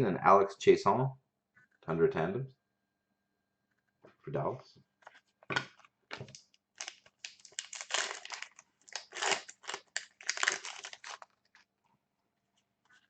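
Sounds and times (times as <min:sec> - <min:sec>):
plastic packaging crinkling: 0:06.2 - 0:11.7.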